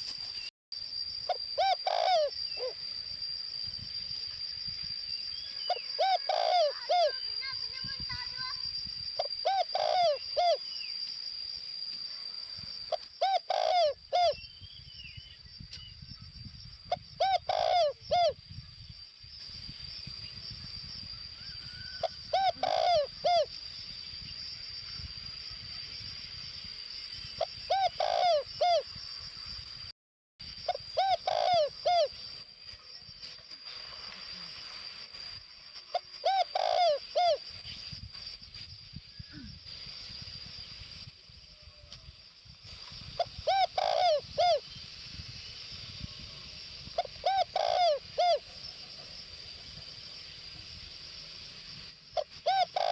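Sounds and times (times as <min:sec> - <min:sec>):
dove cooing: 0:01.6 - 0:02.7, 0:05.7 - 0:07.2, 0:09.2 - 0:10.6, 0:13.2 - 0:14.4, 0:17.2 - 0:18.4, 0:22.0 - 0:23.5, 0:27.7 - 0:28.8, 0:30.7 - 0:32.1, 0:35.9 - 0:37.4, 0:43.2 - 0:44.6, 0:47.0 - 0:48.4, 0:52.2 - 0:52.9.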